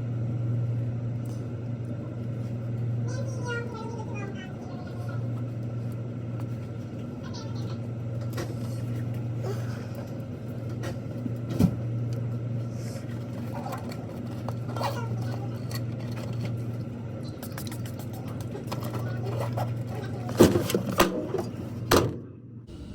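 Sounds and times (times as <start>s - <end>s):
car engine drone: 22.4s - 22.9s
road noise inside car: 22.7s - 22.9s.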